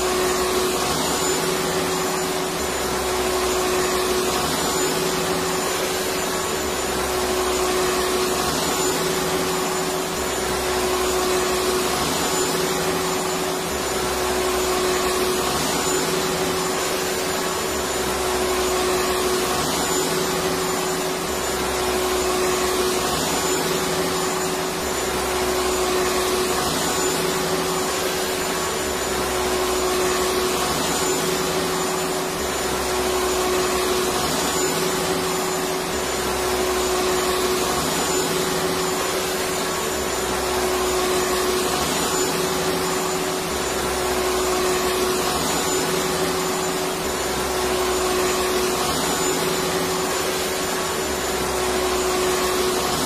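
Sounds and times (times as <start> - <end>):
vacuum cleaner running: 0.0 - 53.0.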